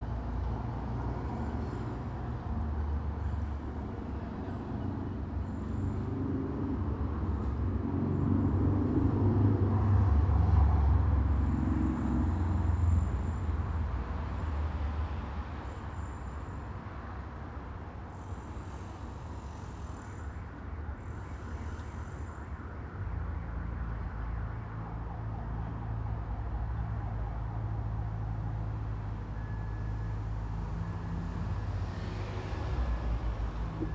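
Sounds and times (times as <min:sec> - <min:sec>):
traffic rumble: 0:00.0 - 0:33.9
heavy vehicle passing: 0:27.5 - 0:33.9.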